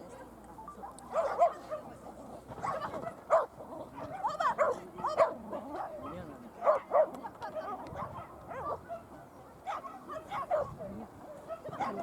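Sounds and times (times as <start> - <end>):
dog barking: 1.1 - 1.9, 2.6 - 7.2, 8.0 - 10.8, 11.5 - 12.0.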